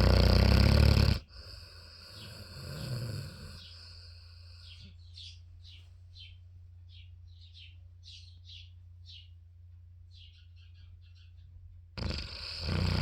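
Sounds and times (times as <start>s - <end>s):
bird chirping: 2.2s - 9.4s, 10.0s - 11.8s.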